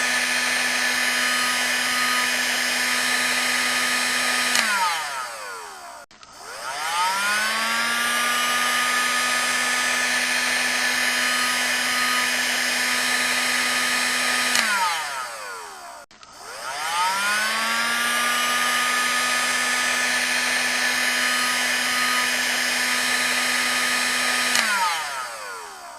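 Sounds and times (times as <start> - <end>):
hair dryer running: 0.0 - 25.9.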